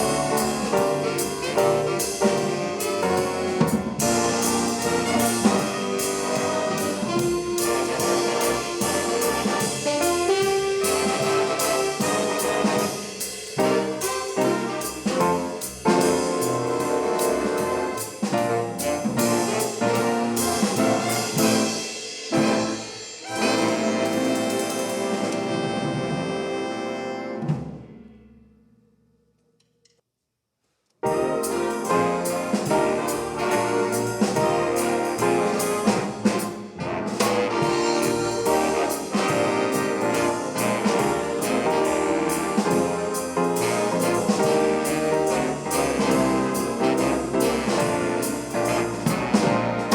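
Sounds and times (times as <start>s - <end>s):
brass-led swing band jazz: 0.0s - 27.9s, 31.0s - 49.9s.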